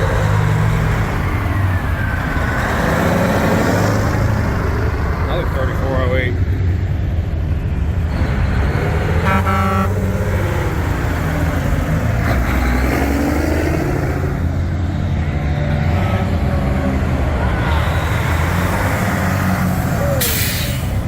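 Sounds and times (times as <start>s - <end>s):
diesel truck engine rumbling: 0.0s - 21.0s
truck horn toot: 9.2s - 10.2s.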